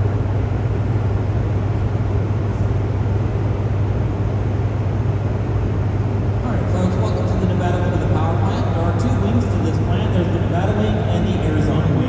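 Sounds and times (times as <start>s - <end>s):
generators humming: 0.0s - 12.0s.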